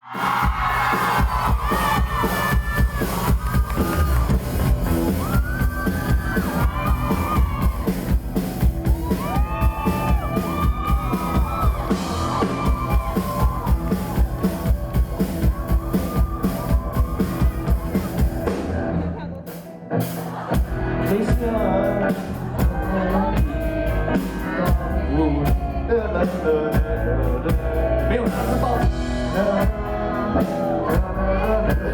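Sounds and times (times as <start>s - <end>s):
audience whoops and shouts: 0.0s - 18.5s
drum kit: 0.0s - 31.9s
live rock band playing: 0.0s - 31.9s.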